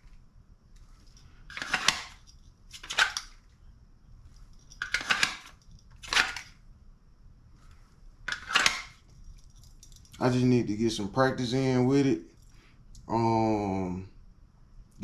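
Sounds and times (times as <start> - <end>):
plastic holster clacks: 1.5 - 3.4, 4.6 - 6.5, 8.3 - 9.0.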